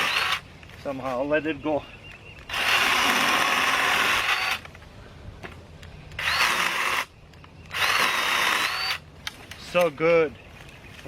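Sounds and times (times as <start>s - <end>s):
mini chainsaw cutting: 0.0s - 0.4s, 2.5s - 4.7s, 6.2s - 7.1s, 7.7s - 9.0s.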